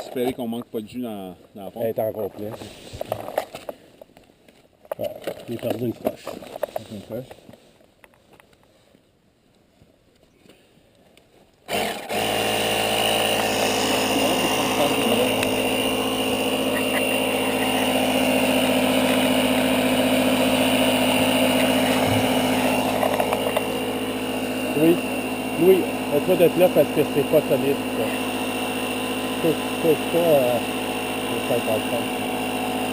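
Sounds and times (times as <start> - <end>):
electric air pump running: 11.7 - 32.9.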